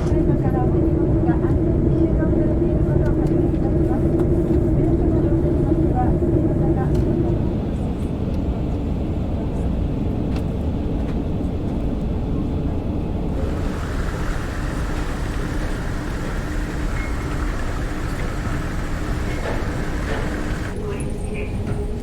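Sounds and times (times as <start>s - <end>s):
vehicle interior rumble: 13.3s - 20.7s.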